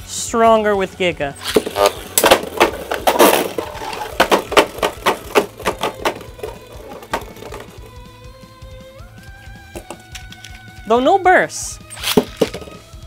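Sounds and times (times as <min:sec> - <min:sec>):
spinning tops clashing: 0:01.4 - 0:07.9, 0:11.9 - 0:12.8.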